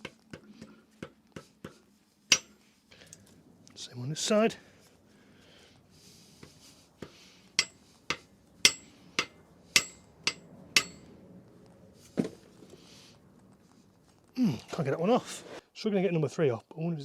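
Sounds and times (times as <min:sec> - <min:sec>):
hammer tapping metal: 0:02.3 - 0:02.6, 0:07.6 - 0:11.2.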